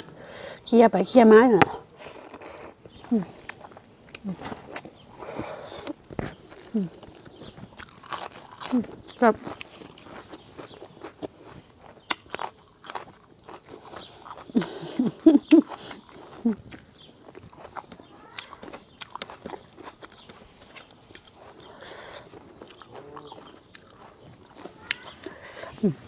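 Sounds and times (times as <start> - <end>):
mouth noises: 0.0 - 7.4, 24.6 - 26.0
chewing and crunching food: 0.0 - 26.0.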